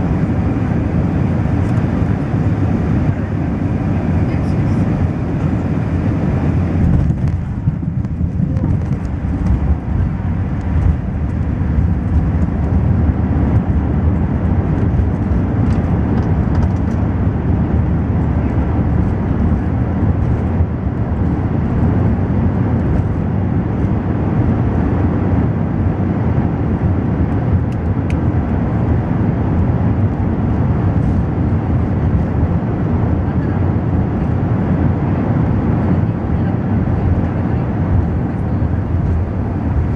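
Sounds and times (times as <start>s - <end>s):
airplane cabin rumble: 0.0s - 39.9s.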